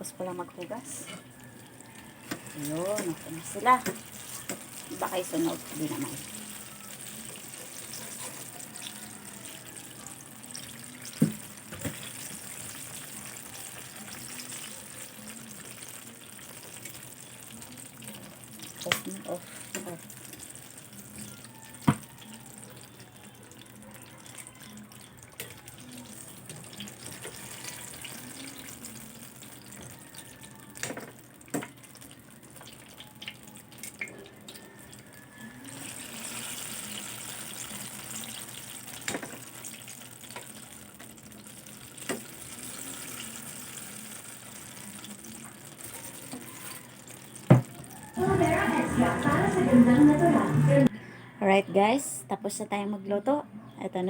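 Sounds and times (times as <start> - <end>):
tap water running into sink: 47.4 - 48.4.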